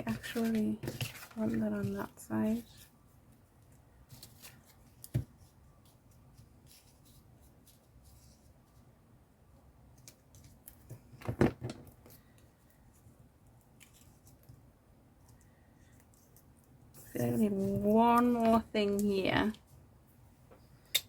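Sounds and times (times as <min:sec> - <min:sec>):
paper rustles and clicks: 0:00.0 - 0:02.1.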